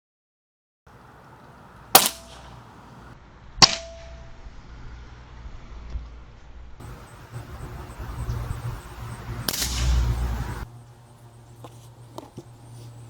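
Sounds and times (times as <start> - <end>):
air rifle shots: 1.0 - 4.2, 9.4 - 10.6.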